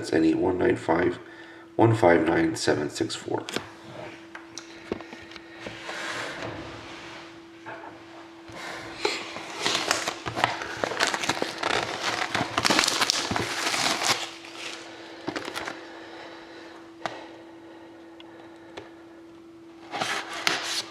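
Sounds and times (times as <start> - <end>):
plastic wrapping crinkling: 9.2 - 15.8.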